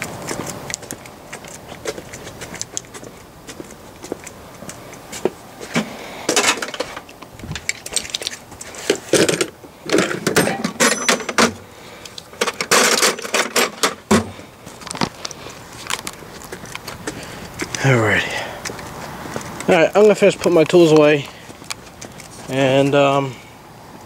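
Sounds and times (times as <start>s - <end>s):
metal hand tools clattering: 9.0s - 11.6s.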